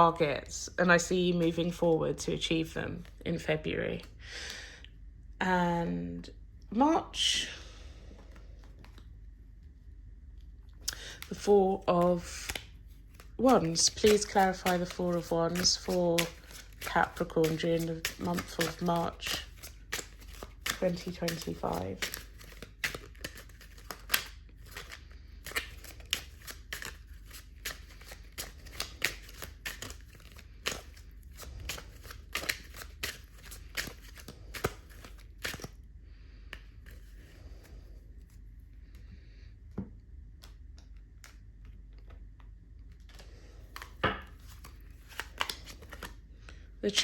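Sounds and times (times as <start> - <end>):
cards being shuffled: 8.1 - 9.2, 10.8 - 39.2, 39.8 - 46.6.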